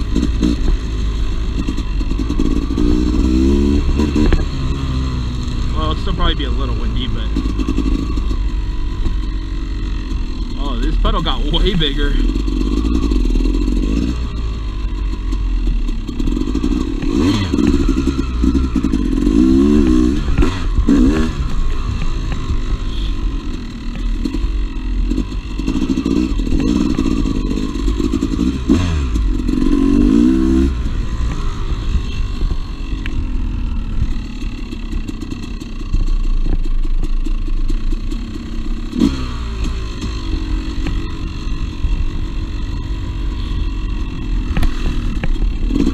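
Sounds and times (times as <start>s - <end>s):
two-stroke dirt bike engine revving: 0.0s - 45.9s.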